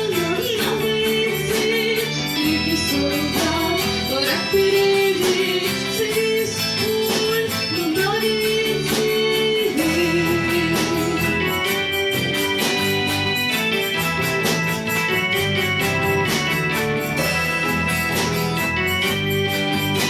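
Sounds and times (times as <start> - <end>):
person singing: 0.0 - 14.0
electric guitars: 0.0 - 20.0
drum beat: 9.8 - 20.0.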